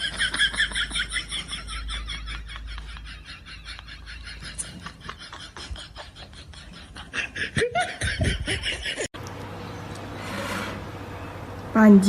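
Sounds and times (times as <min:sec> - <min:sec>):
person laughing in breathy bursts: 0:00.0 - 0:09.1.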